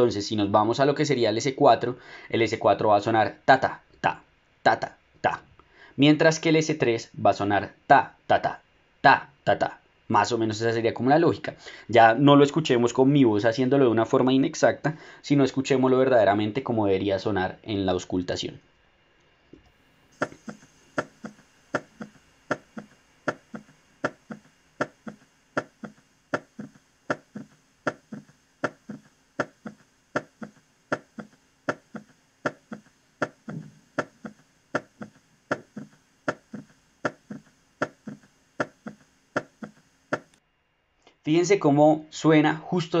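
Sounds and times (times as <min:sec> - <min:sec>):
three-beat heart gallop: 0:20.1 - 0:40.4.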